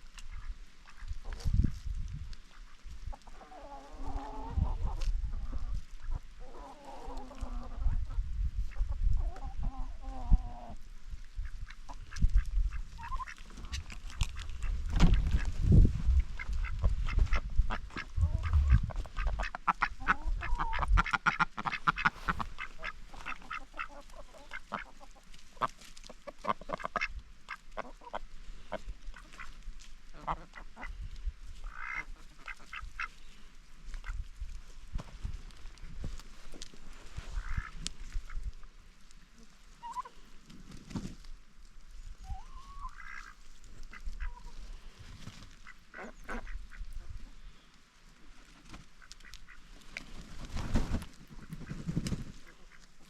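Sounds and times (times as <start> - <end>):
ducks quacking and honking: 11.4 - 15.5, 16.2 - 31.0, 31.6 - 33.2, 37.2 - 38.5, 42.3 - 47.4
poultry calling: 11.5 - 14.7, 16.4 - 28.2, 39.4 - 40.2, 42.2 - 47.7
low rumble: 18.0 - 19.2.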